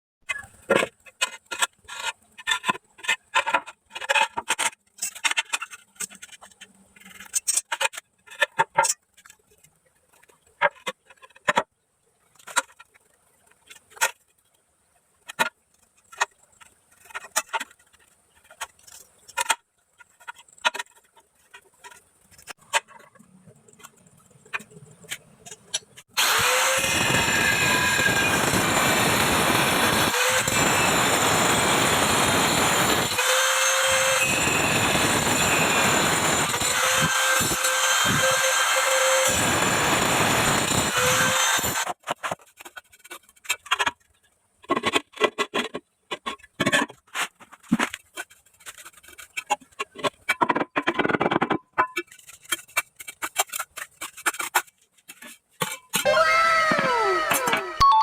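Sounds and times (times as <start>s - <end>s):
electric cutter cutting tile: 26.1s - 42.0s, 56.0s - 58.0s
tiles and tools tapping: 40.5s - 56.0s.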